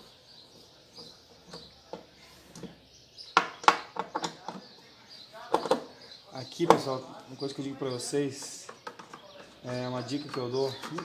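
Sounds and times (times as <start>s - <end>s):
metal tools clicking and tapping: 8.4s - 11.0s.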